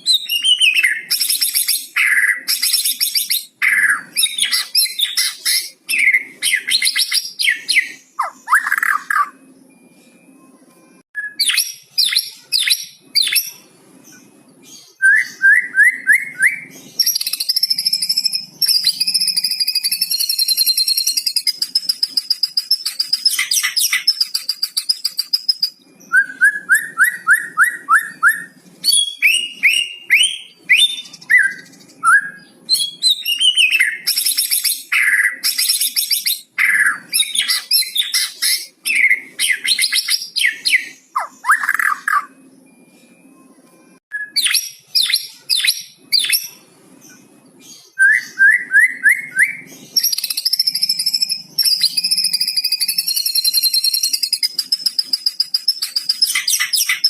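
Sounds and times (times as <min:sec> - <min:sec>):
songbird singing varied song: 0:11.2 - 0:43.2, 0:44.1 - 0:57.0.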